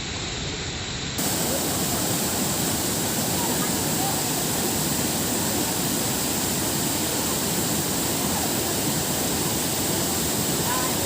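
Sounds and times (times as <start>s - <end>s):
waterfall rushing: 1.2s - 11.0s.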